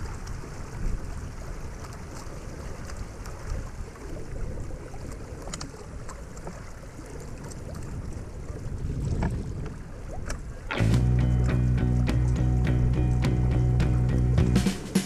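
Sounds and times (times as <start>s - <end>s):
wind buffeting microphone: 0.0s - 6.1s, 7.3s - 14.4s
water rushing along boat hull: 0.0s - 15.0s.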